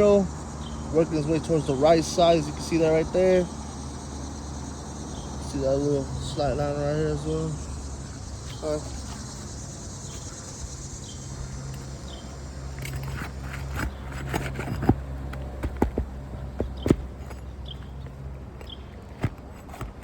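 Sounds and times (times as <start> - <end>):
insects chirping: 0.0 - 20.0
steady low hum: 0.0 - 20.0
pry tool scraping and knocking: 12.8 - 17.5.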